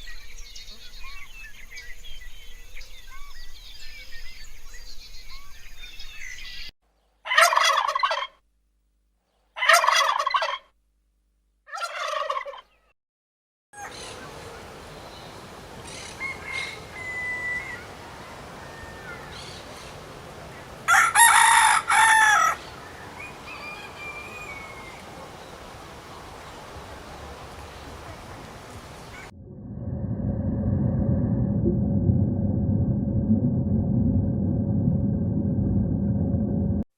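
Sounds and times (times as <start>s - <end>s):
small birds chirping: 0.0s - 7.2s
turkey gobbling: 7.3s - 8.4s, 9.6s - 10.7s, 11.7s - 12.7s, 15.9s - 17.8s
steady outdoor hiss: 13.8s - 29.3s.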